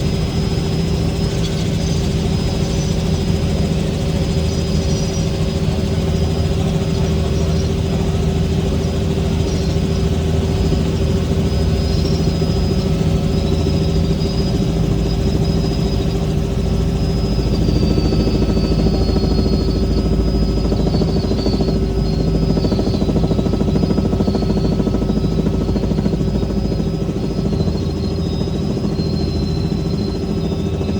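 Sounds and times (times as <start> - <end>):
helicopter engine and rotor: 0.0 - 30.9.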